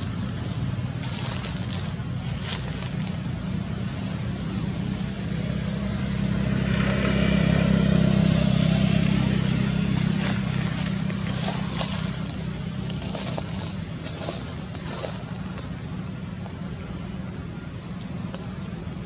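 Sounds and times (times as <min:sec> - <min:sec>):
vehicle engine running: 0:00.0 - 0:19.0.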